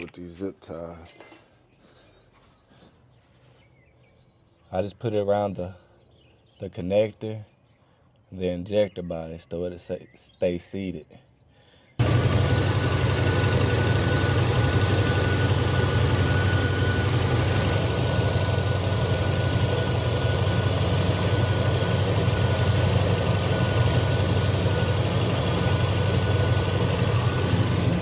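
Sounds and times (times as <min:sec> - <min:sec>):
engine idling low rumble: 0:12.0 - 0:28.0
thin steady whine: 0:12.0 - 0:28.0.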